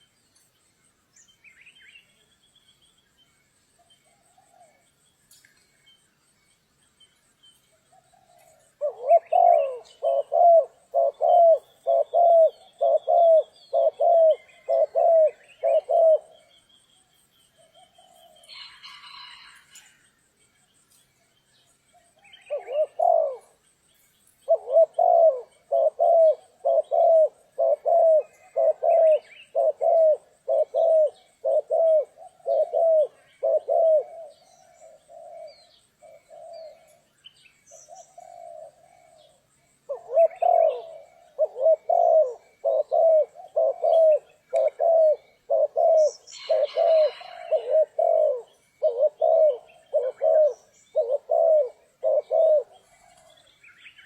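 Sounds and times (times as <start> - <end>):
small birds chirping: 0.0 - 54.0
dove cooing: 7.9 - 16.6, 22.2 - 23.6, 24.4 - 37.1, 37.8 - 53.9.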